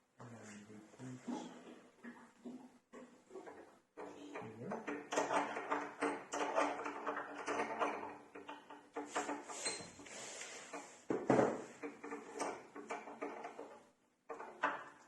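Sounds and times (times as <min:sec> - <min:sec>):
metal lock parts clicking and rattling: 0:04.0 - 0:09.3.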